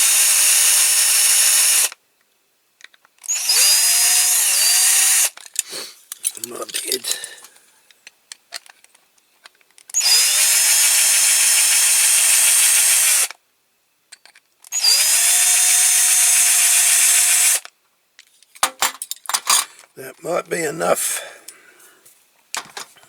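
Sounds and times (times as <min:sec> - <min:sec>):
electric drill whining: 0:00.0 - 0:01.9, 0:03.3 - 0:05.4, 0:10.0 - 0:13.3, 0:14.7 - 0:17.6.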